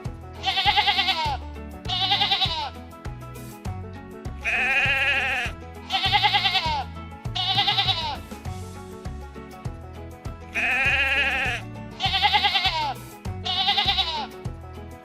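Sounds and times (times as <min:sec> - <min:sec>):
background music with low beat: 0:00.0 - 0:15.0
sheep bleating: 0:00.4 - 0:02.8, 0:04.4 - 0:08.2, 0:10.5 - 0:14.3.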